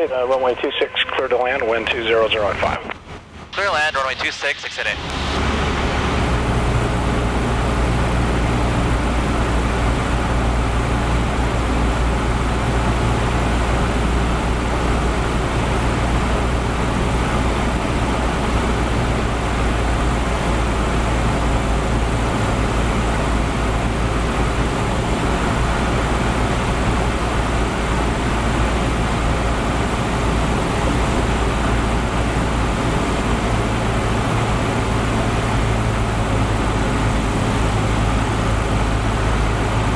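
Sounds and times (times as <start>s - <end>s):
propeller plane engine droning: 0.0s - 39.9s.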